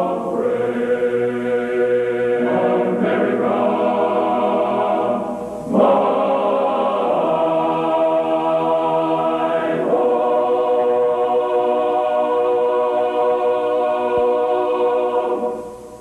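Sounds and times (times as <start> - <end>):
choir singing held chords: 0.0 - 16.0.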